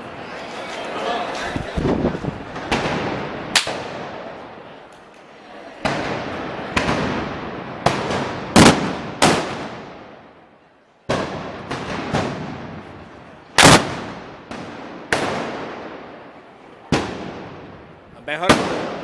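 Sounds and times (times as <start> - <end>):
loud echoing gunpowder bangs: 2.5 - 4.4, 5.8 - 10.2, 11.1 - 16.2, 16.9 - 17.8, 18.4 - 19.0.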